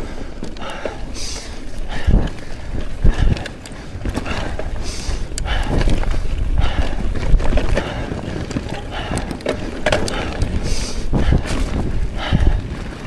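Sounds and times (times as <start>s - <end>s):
bike tyres over dirt: 0.0s - 13.0s
person breathing hard: 0.0s - 13.0s
wind on microphone: 1.5s - 13.0s
bike clattering knocks: 5.6s - 13.0s.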